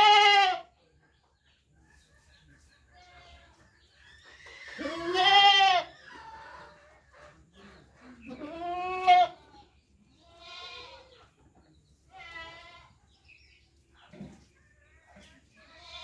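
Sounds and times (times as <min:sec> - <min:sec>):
goat bleating: 0:00.0 - 0:00.7, 0:04.7 - 0:06.0, 0:08.3 - 0:09.4, 0:10.2 - 0:11.2, 0:12.1 - 0:13.0, 0:15.7 - 0:16.0.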